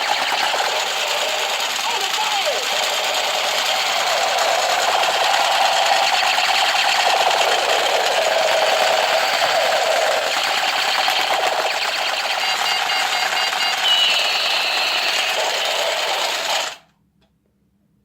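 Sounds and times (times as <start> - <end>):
toy gun buzzing rattle: 0.0 - 16.8.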